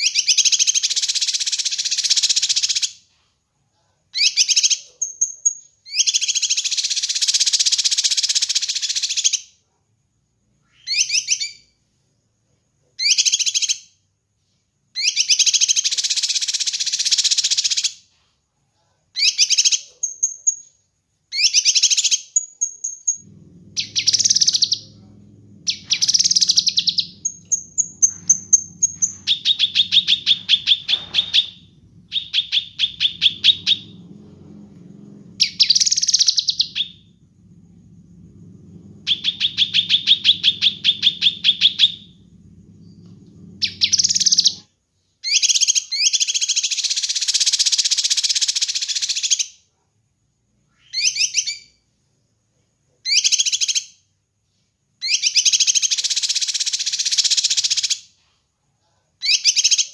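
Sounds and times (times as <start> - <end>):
songbird singing trills: 21.4 - 38.0, 38.9 - 44.6
low steady hum: 23.1 - 44.6.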